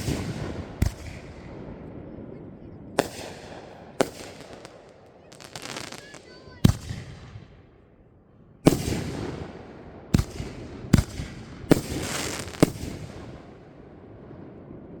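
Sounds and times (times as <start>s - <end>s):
firework bangs: 0.0s - 7.6s, 8.6s - 15.0s
firework crackling hiss: 3.0s - 7.2s, 11.0s - 13.3s.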